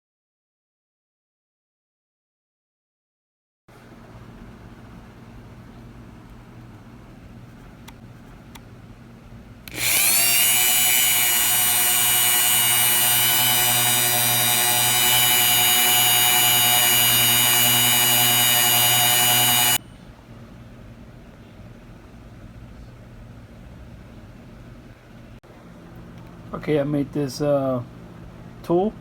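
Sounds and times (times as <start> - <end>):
electric drill whining: 9.7 - 19.8.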